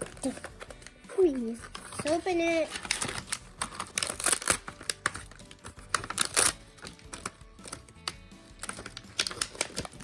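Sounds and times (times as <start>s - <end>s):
background music: 0.0s - 10.0s
toy packaging crinkling: 0.0s - 10.0s.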